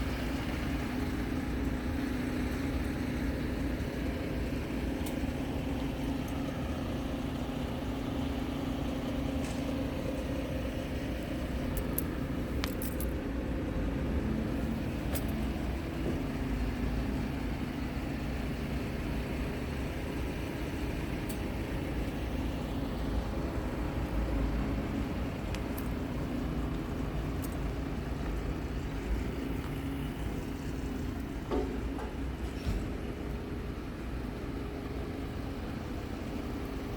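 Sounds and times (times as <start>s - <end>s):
diesel engine humming steadily: 0.0s - 36.9s.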